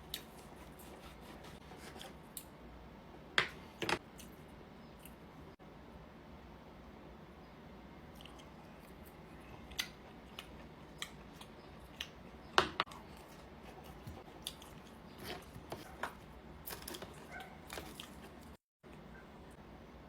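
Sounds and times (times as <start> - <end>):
crunchy wet chewing: 8.1 - 18.6.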